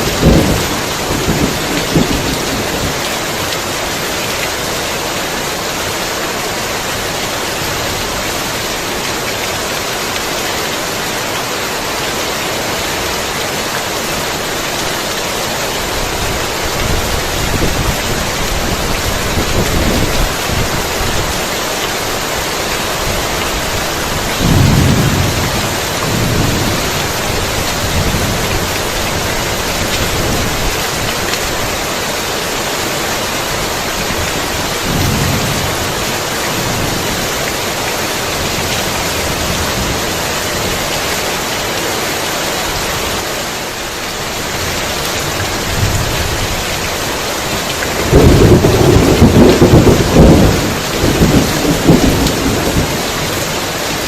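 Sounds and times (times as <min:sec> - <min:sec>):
thunder rolling: 0:00.0 - 0:03.1, 0:24.3 - 0:29.3, 0:34.8 - 0:36.0, 0:48.0 - 0:53.2
heavy rain falling: 0:00.0 - 0:54.0.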